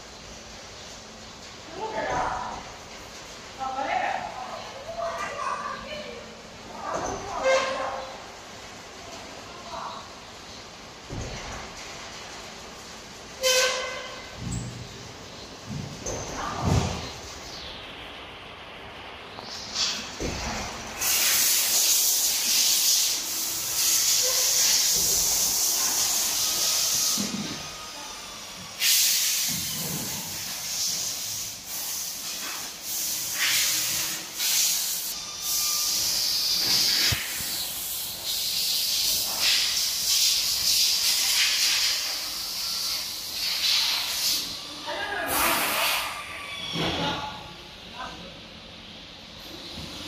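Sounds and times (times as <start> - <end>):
high-pitched hiss of rushing air: 19.3 - 46.6.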